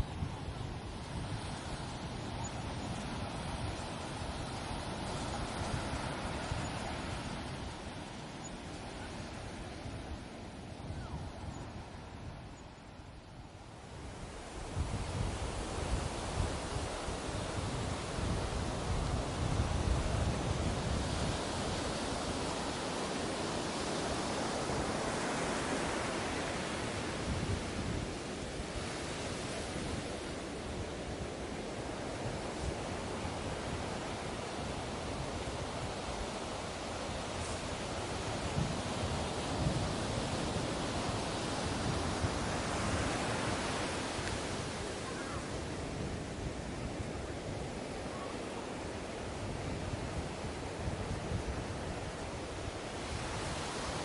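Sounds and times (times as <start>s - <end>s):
ocean waves breaking on beach: 0.0s - 54.0s.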